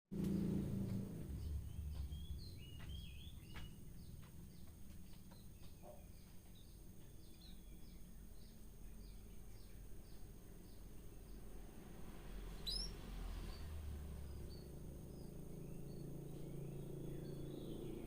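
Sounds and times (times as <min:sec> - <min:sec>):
small birds chirping: 0:00.1 - 0:18.0
low rumble: 0:00.2 - 0:04.7.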